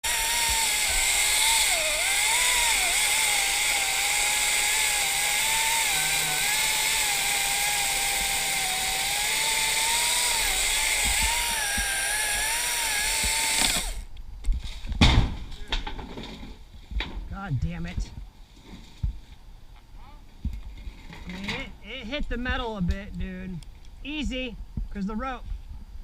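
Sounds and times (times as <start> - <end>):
chainsaw cutting through tree: 0.0 - 14.1.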